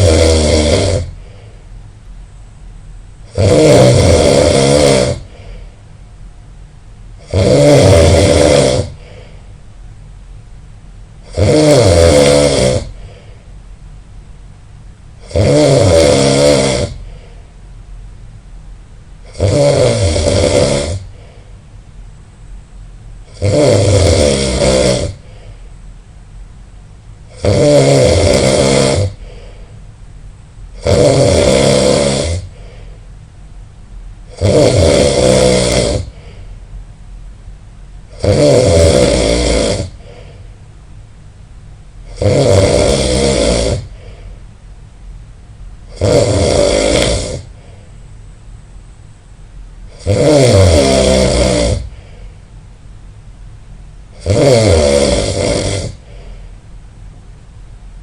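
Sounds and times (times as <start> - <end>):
person snoring loudly: 0.0 - 1.5, 3.3 - 5.6, 7.2 - 9.3, 11.2 - 13.3, 15.2 - 17.2, 19.2 - 21.3, 23.3 - 25.5, 27.3 - 29.6, 30.8 - 32.8, 34.3 - 36.4, 38.1 - 40.4, 42.1 - 44.2, 45.9 - 47.7, 49.9 - 52.0, 54.2 - 56.4.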